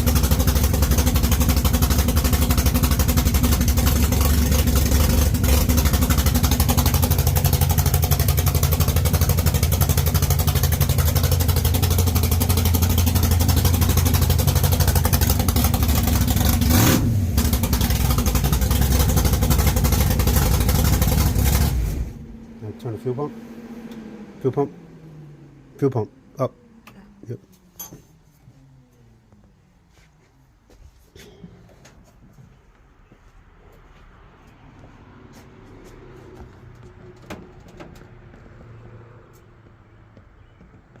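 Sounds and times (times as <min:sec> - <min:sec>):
engine revving: 0:00.0 - 0:27.7
car engine idling: 0:00.0 - 0:29.8.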